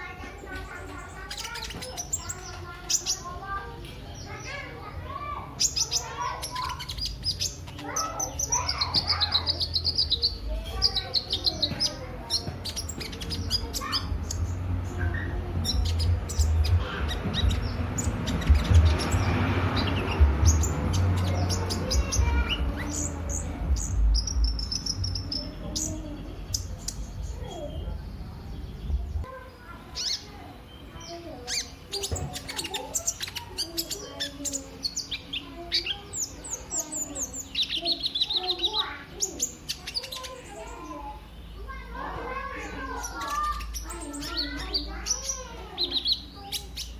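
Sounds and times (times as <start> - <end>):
sunbird chirping and trilling: 0.0 - 46.9
steady low rumble: 14.0 - 29.3.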